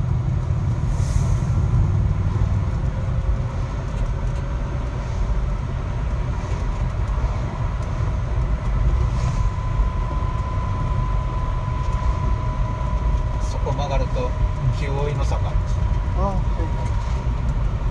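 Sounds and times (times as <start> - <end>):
road and engine rumble: 0.0 - 17.9
thin steady whine: 8.6 - 17.9.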